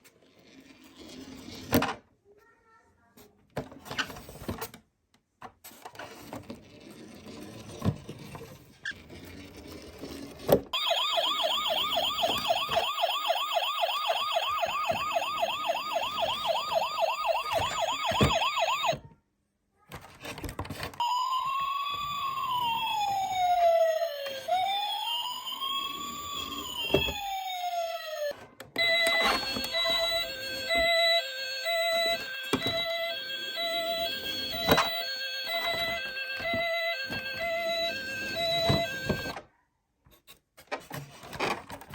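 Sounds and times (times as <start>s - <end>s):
toy siren: 10.8s - 19.0s, 21.0s - 39.5s.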